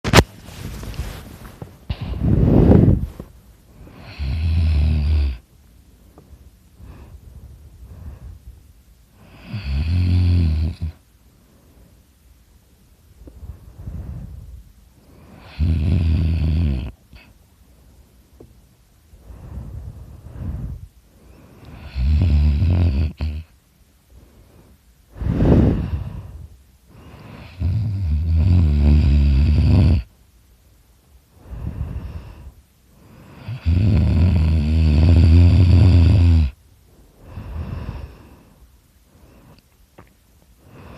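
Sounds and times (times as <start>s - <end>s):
soft breathing: 0.0s - 4.4s, 5.2s - 9.6s, 10.8s - 15.7s, 16.9s - 22.1s, 23.1s - 27.7s, 30.0s - 33.6s, 36.5s - 40.9s
person snoring: 3.8s - 5.4s, 9.2s - 11.0s, 15.2s - 17.3s, 21.6s - 23.5s, 25.1s - 30.1s, 31.4s - 36.6s.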